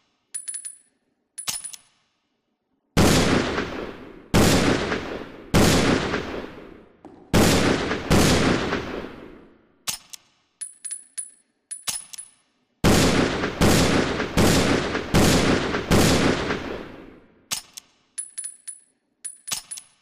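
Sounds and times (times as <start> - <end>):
metallic clicks with ring: 0.3 - 2.1, 9.9 - 12.6, 17.5 - 20.0.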